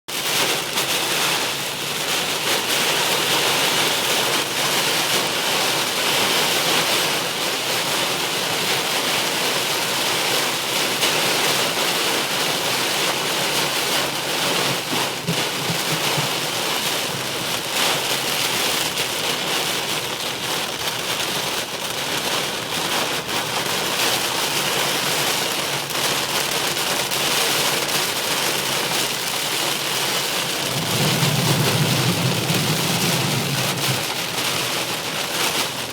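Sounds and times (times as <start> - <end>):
rain on a moving car: 0.1 - 35.9.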